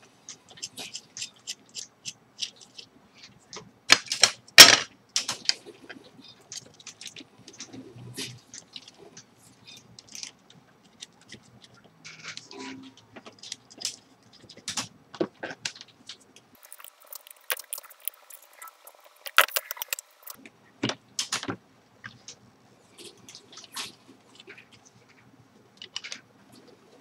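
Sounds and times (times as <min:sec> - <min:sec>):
small metal parts clicking and rattling: 0:06.5 - 0:20.4.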